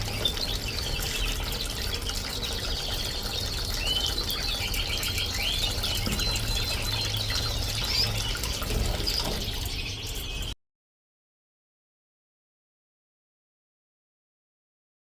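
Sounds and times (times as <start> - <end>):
birds chirping: 0.0 - 10.6
fountain splashing and trickling: 0.0 - 10.6.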